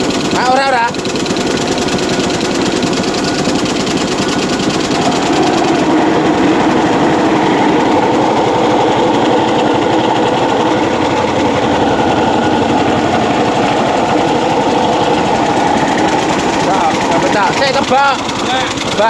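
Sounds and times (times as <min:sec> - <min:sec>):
machine rattling loudly: 0:00.0 - 0:19.0.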